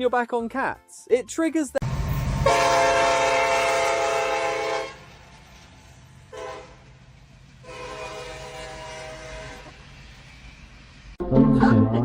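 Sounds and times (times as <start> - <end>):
horn blasts: 2.4 - 5.1, 6.3 - 6.8, 7.6 - 9.7.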